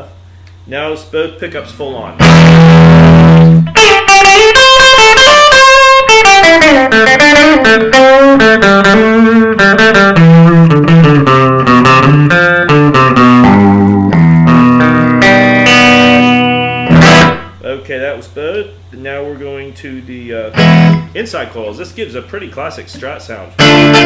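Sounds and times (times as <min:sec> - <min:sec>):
clean electric guitar: 0:02.1 - 0:17.8, 0:20.5 - 0:21.2, 0:22.9 - 0:24.0.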